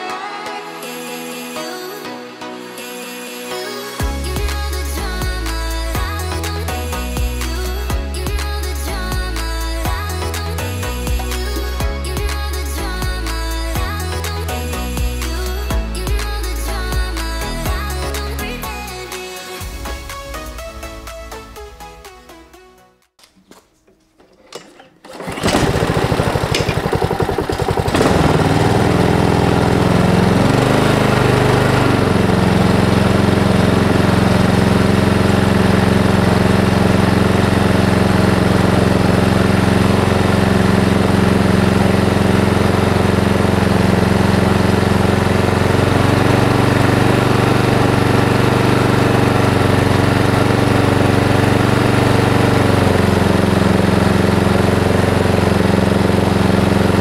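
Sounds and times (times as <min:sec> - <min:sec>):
lawn mower engine running: 0:04.0 - 0:15.9, 0:24.2 - 0:57.0.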